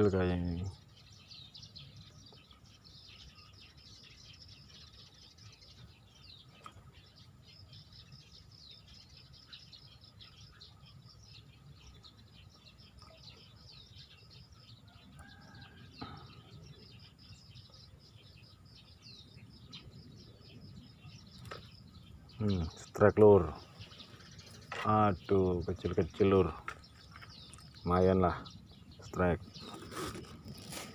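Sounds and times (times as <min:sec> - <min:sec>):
small birds chirping: 0:00.0 - 0:30.9.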